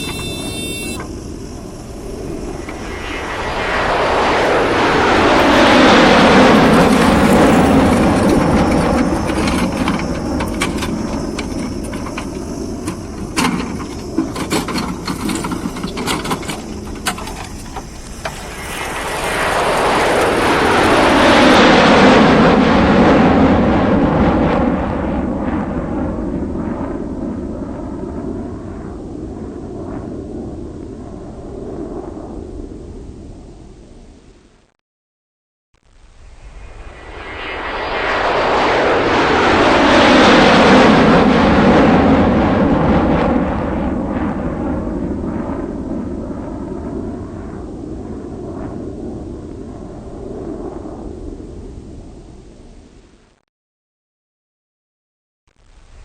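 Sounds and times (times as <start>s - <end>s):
rattling clicks: 8.2s - 18.4s.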